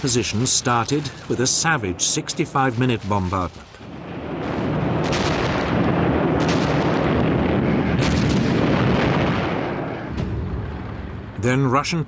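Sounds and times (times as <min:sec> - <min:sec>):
rumble of artillery gunfire: 0:04.0 - 0:11.4
sharp artillery blasts: 0:04.0 - 0:11.4.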